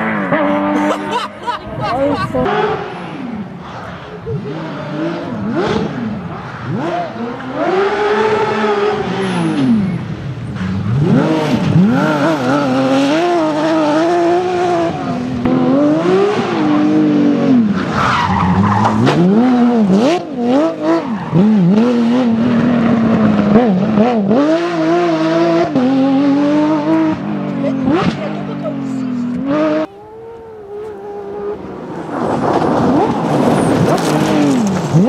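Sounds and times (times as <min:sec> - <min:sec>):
car engine revving hard: 0:00.0 - 0:29.9.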